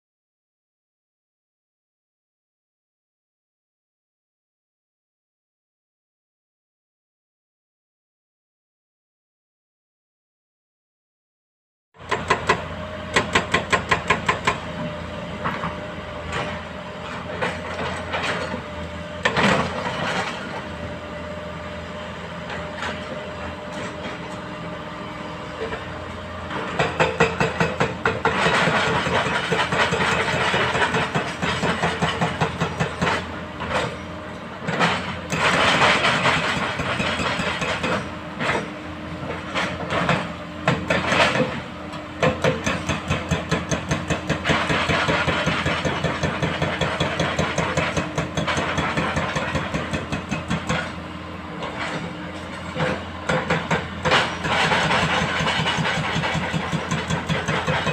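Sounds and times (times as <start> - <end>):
heavy diesel engines running: 12.0 - 57.9.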